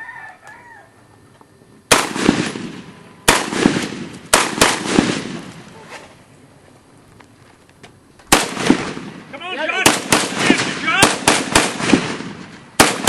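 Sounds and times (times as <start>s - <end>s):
gunshots with echo: 1.9s - 5.5s, 8.3s - 13.0s.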